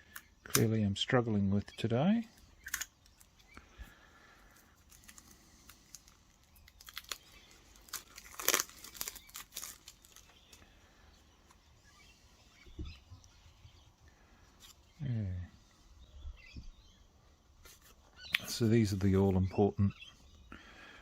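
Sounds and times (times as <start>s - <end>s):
plastic wrap crinkling and tearing: 4.8s - 10.6s.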